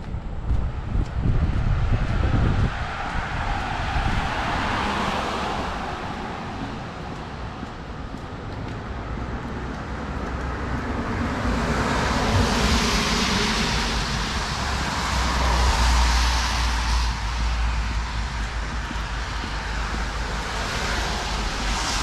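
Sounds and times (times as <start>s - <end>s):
low traffic rumble: 0.0s - 22.0s
vehicle tyre hiss on wet road: 11.4s - 22.0s.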